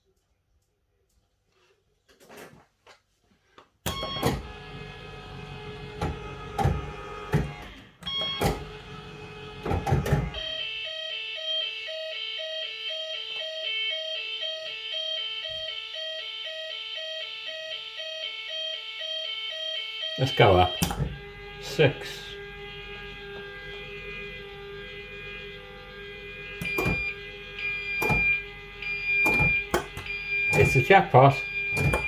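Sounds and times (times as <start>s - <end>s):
electronic bleeping tune: 26.6s - 32.0s.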